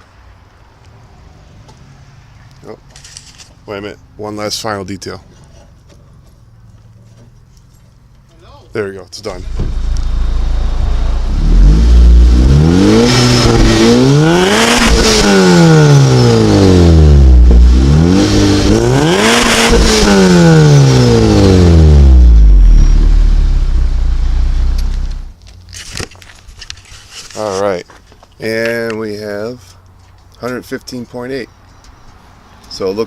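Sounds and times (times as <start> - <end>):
car engine idling: 9.3 - 19.0, 19.7 - 25.4
car engine revving: 9.4 - 25.3.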